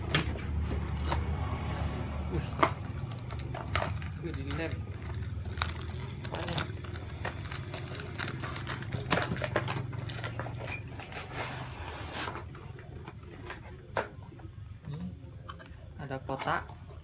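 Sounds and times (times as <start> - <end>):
packaging being handled: 3.2 - 12.4.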